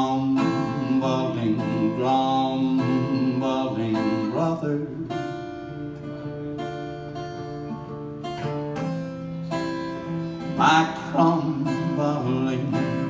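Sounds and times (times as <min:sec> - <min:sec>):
man singing: 0:00.0 - 0:05.4, 0:10.5 - 0:13.0
guitar strummed chords: 0:00.0 - 0:13.0.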